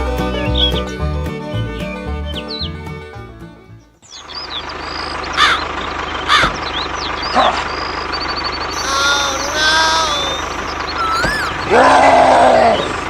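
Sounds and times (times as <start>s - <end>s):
background music: 0.0s - 4.0s
bird chirps and calls: 0.4s - 1.0s, 1.8s - 2.8s, 4.0s - 11.8s.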